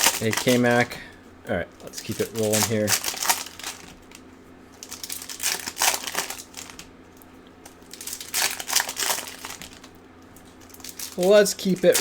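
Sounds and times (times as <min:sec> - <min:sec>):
plastic wrapper crinkling: 0:00.0 - 0:01.0, 0:01.8 - 0:04.2, 0:04.8 - 0:06.9, 0:07.6 - 0:12.0.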